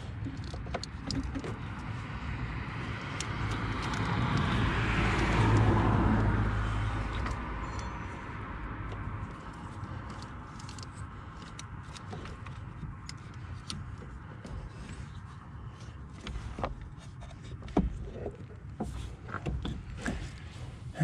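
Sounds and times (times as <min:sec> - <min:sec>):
small parts clicking: 0:08.9 - 0:15.2.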